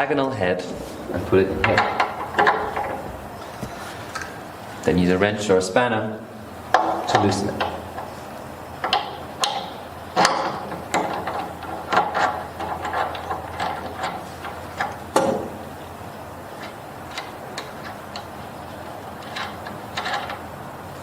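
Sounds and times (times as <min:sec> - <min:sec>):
wrench metallic clicks and knocks: 0:01.6 - 0:03.2, 0:06.7 - 0:08.2, 0:08.8 - 0:15.6, 0:19.2 - 0:20.5.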